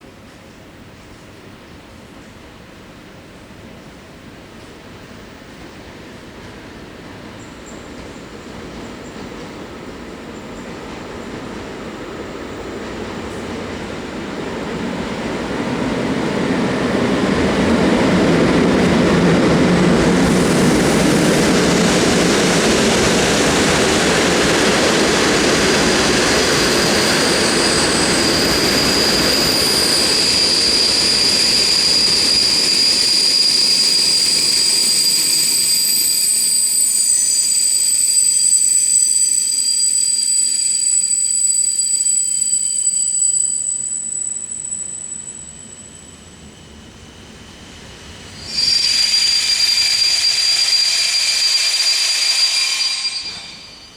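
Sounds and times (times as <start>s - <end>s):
train wheels rumbling: 4.4s - 53.9s
brake and wheel squeals: 16.7s - 46.8s, 48.4s - 53.9s.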